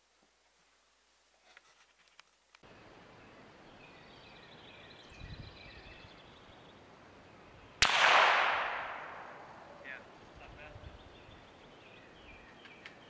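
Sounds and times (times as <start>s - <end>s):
loud rifle shot: 7.8s - 9.5s.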